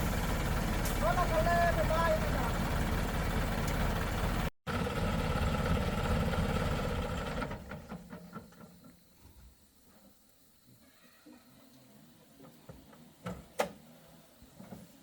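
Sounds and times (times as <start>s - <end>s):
diesel engine running: 0.0s - 8.5s.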